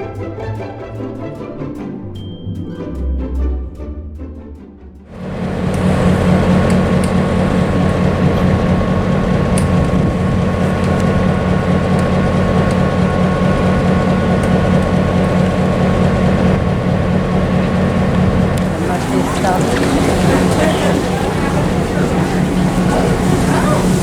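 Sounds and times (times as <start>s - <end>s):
diesel locomotive engine drone: 5.1s - 24.0s
faint clicks: 5.4s - 24.0s.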